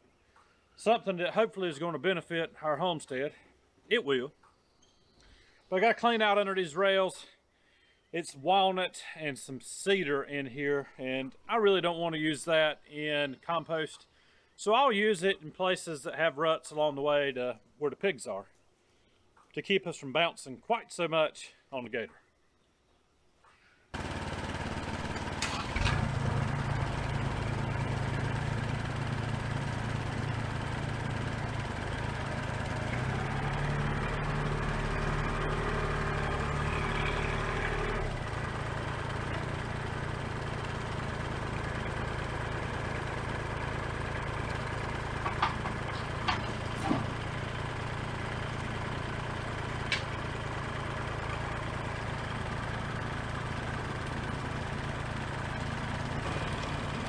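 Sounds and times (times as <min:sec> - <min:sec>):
engine running steadily: 0:24.0 - 0:57.0.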